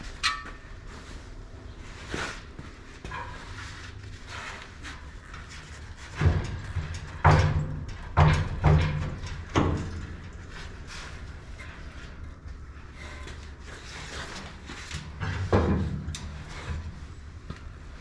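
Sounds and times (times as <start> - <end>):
steady low hum: 0.0 - 18.0
heavy knocks on steel: 6.2 - 10.0.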